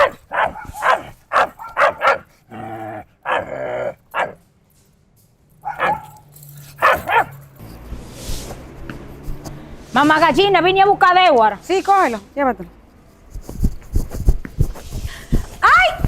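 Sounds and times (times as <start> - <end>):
small dog yapping: 0.0 - 2.3, 5.6 - 6.2, 6.8 - 7.4.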